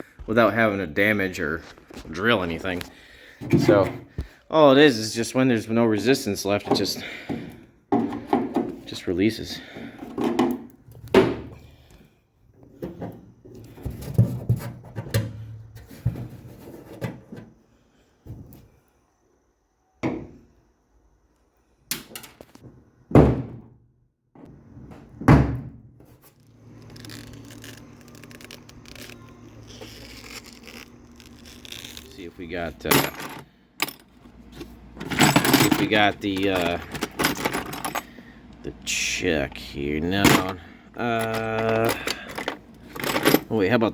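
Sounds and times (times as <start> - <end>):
handling noise: 26.6 - 38.2, 40.2 - 43.7.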